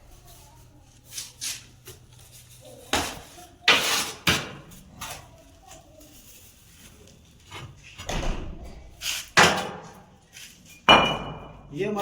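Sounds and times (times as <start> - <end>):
tool scraping concrete: 1.0 - 4.5.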